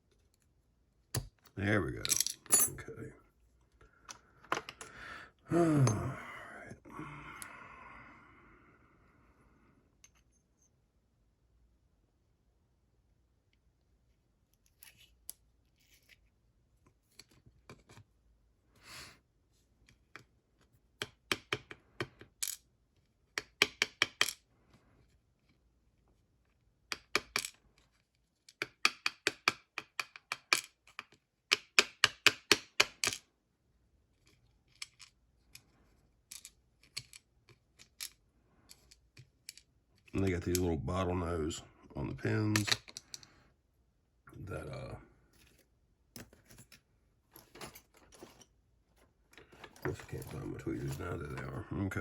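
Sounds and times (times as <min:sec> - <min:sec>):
lock pins rattling on hard surface: 0:02.0 - 0:02.9, 0:49.4 - 0:51.6.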